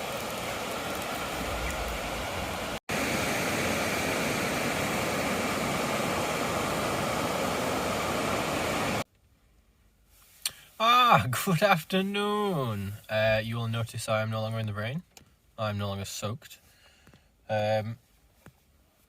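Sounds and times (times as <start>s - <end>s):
steady rushing noise: 0.0s - 9.0s.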